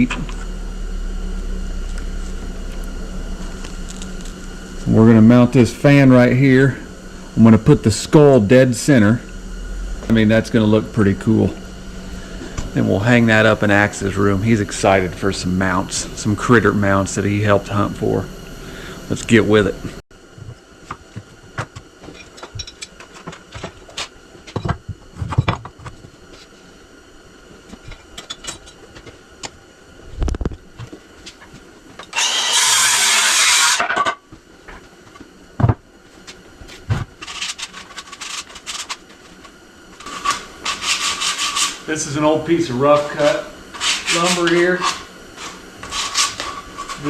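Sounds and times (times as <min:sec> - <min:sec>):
rubbing and scraping on board edges: 0:40.7 - 0:41.8, 0:43.8 - 0:45.0.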